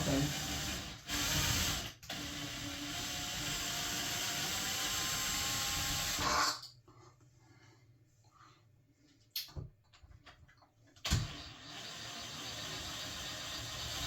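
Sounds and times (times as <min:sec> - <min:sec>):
cordless power drill running: 0:00.0 - 0:06.5, 0:11.1 - 0:14.0.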